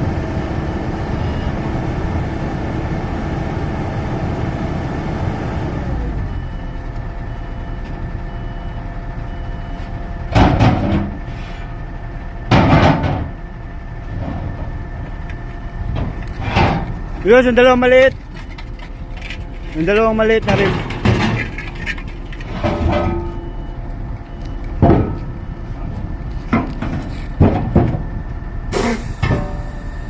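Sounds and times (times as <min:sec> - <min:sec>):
heavy diesel engine running: 0:00.0 - 0:30.0
heavy equipment bangs: 0:10.3 - 0:11.3, 0:12.4 - 0:13.4, 0:15.9 - 0:18.2, 0:20.0 - 0:23.6, 0:24.8 - 0:25.9, 0:26.5 - 0:30.0.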